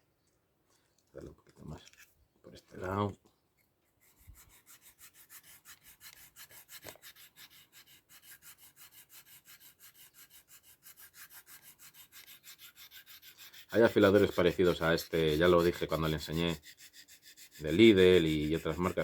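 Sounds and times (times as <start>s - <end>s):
knife scraping on sharpener: 4.1s - 19.0s.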